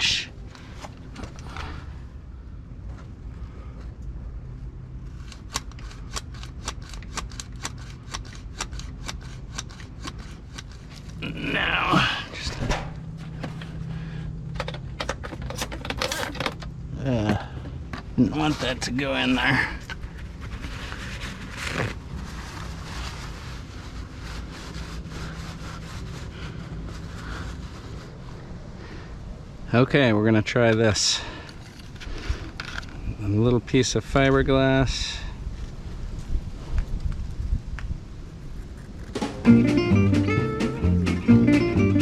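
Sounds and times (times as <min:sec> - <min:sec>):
wind rumbling on microphone: 0:34.0 - 0:39.4.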